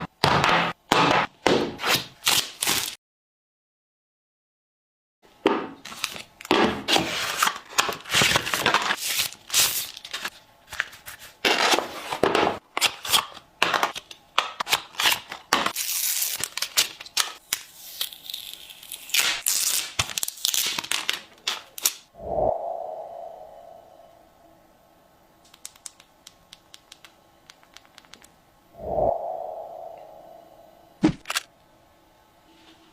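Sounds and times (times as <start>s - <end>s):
box and plastic wrapping being opened: 1.8s - 3.0s, 5.8s - 22.0s.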